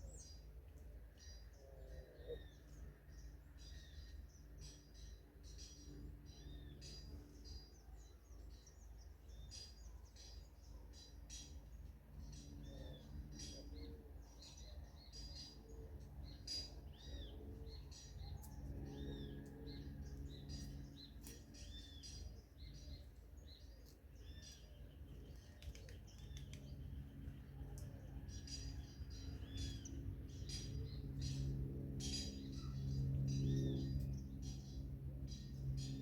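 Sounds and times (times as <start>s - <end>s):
birds chirping: 0.0s - 36.0s
faint low hum: 0.0s - 36.0s.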